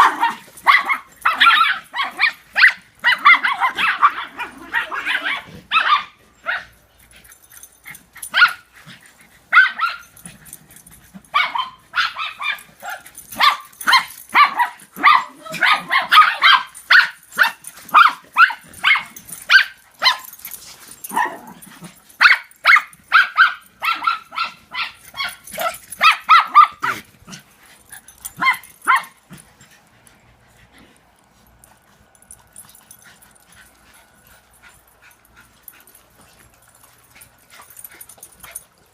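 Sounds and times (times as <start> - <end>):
dogs barking: 0.0 - 6.8, 11.3 - 20.4, 21.0 - 27.1.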